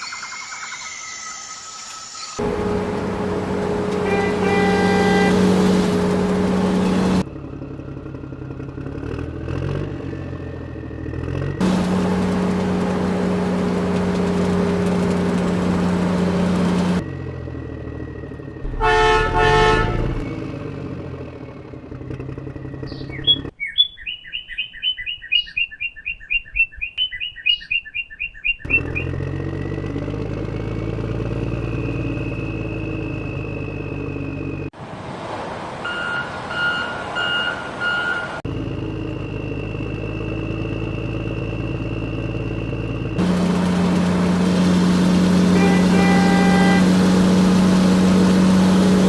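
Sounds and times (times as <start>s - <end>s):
short horn honk: 3.8s - 6.3s, 18.7s - 20.2s, 45.5s - 46.9s.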